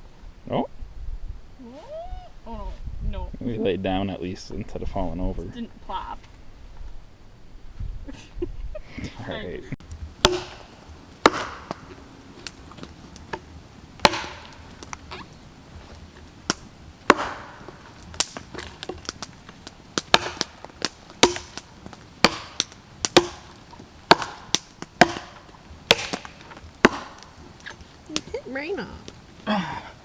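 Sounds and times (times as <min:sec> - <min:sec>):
axe striking wood: 0:10.2 - 0:11.9, 0:14.0 - 0:14.6, 0:16.5 - 0:19.2, 0:20.0 - 0:27.4
split wood clattering: 0:16.5 - 0:28.4.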